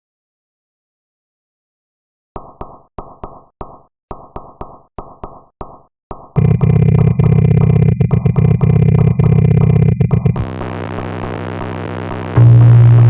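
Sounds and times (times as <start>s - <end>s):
distorted bass drone: 6.4s - 13.0s
stuttering synthesized hits: 6.4s - 13.0s.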